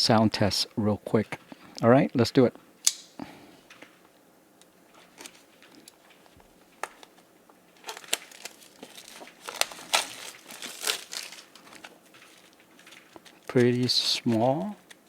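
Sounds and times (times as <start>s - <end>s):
packaging crinkling and rustling: 4.9s - 15.0s.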